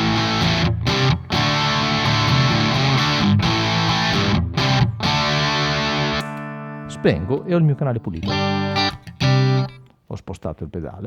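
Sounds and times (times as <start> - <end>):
distorted electric guitar chords: 0.0 - 9.9.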